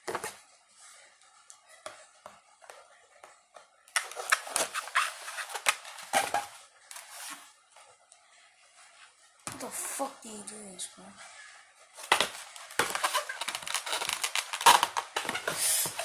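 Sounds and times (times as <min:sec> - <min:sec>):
packaging clicking and rustling: 0:12.0 - 0:16.0.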